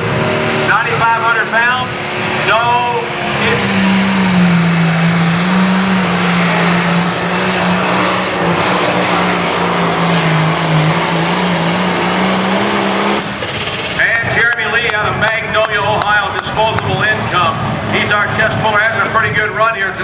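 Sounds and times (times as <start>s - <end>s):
tractor diesel engine under load: 0.0s - 20.0s.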